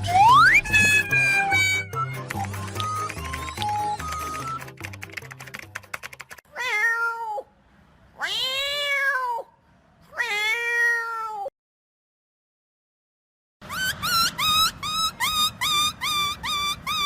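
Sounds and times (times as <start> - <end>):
rapid clicks: 2.2 - 6.4
cat meowing: 6.5 - 7.5, 8.2 - 9.5, 10.1 - 11.5.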